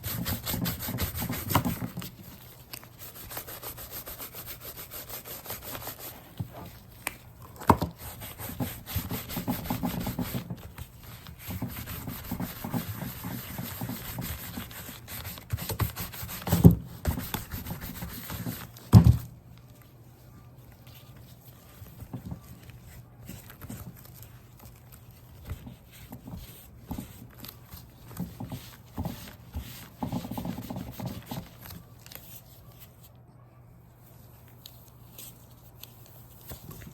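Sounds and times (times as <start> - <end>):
brush rubbing leather: 3.0 - 6.2, 8.0 - 16.5.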